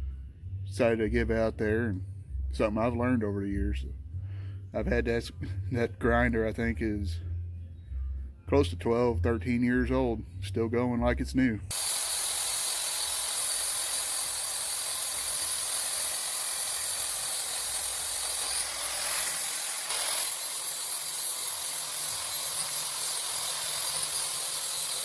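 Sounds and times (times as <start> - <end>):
power tool grinding sheet steel: 11.7 - 25.0.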